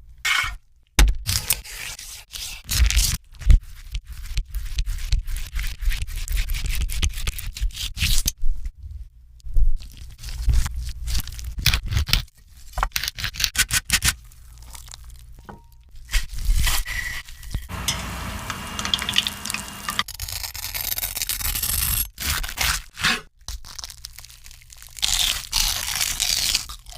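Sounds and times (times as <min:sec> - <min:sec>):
crunching crispy fried food: 0:09.8 - 0:13.5, 0:14.1 - 0:15.4, 0:18.6 - 0:22.6, 0:23.4 - 0:26.9.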